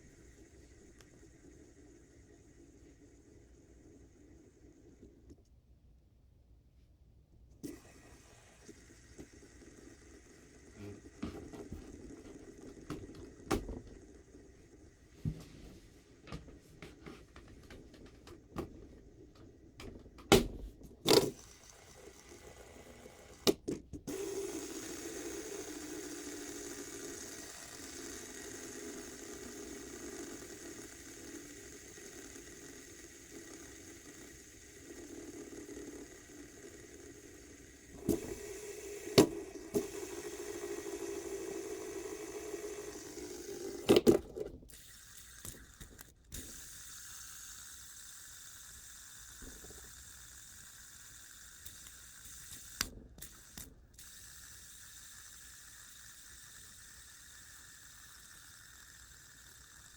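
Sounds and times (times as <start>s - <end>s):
fidget spinner whirring: 0.0s - 5.5s, 7.6s - 59.9s
fidget spinner clicks: 0.0s - 5.6s, 16.3s - 59.9s.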